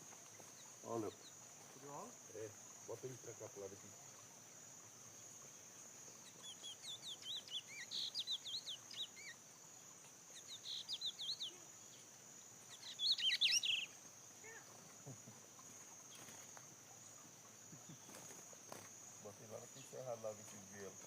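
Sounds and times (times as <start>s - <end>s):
songbird whistling: 12.7s - 13.9s.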